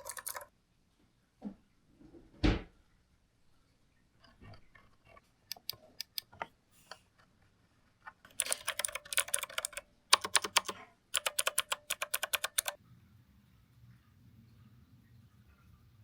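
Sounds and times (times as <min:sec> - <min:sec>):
mechanical keyboard clacking: 0:00.0 - 0:00.5, 0:05.5 - 0:06.4, 0:08.2 - 0:12.8.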